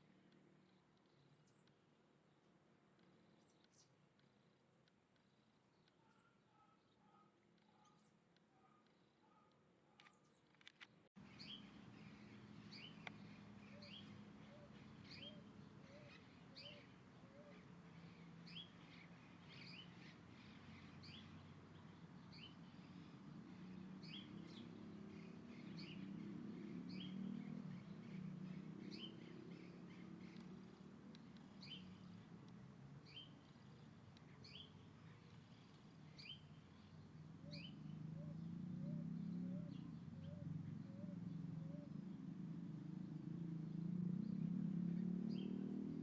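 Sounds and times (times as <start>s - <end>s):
bird chirping: 11.2s - 42.3s.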